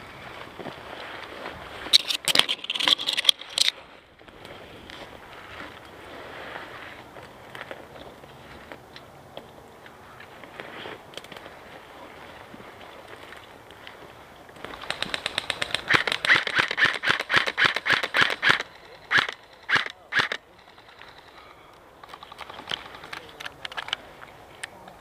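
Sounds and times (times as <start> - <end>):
airsoft gun firing: 14.7 - 20.4.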